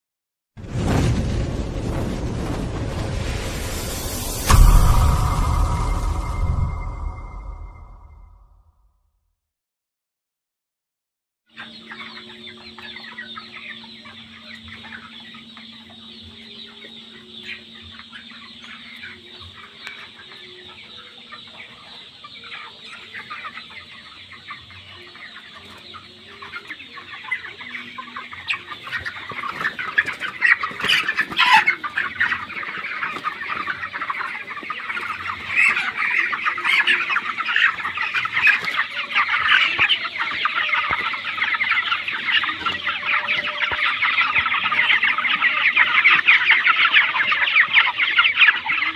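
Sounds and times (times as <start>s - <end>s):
chickens clucking and chirping: 11.6s - 48.9s.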